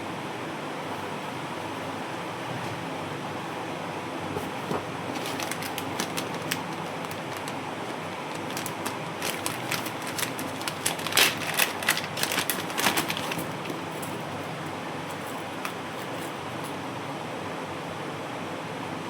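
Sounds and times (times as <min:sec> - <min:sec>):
packaging crackling and clicking: 0:04.8 - 0:14.3.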